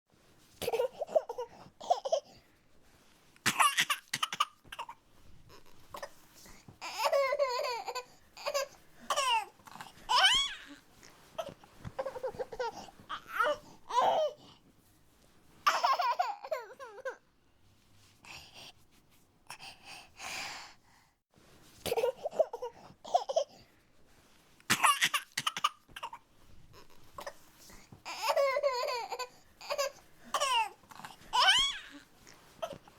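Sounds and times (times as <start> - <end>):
baby whining and fussing: 3.5 - 14.6, 15.6 - 17.2, 24.8 - 32.9.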